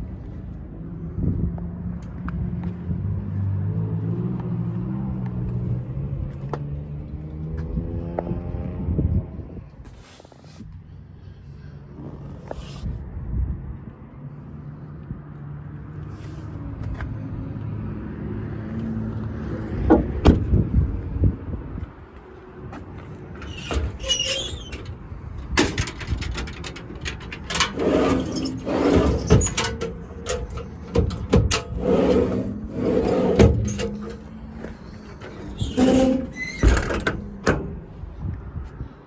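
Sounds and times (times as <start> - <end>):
metal doors clunking: 19.7 - 20.7, 23.1 - 38.3
metal squeaks: 23.1 - 38.1
latch clicks: 23.4 - 38.1.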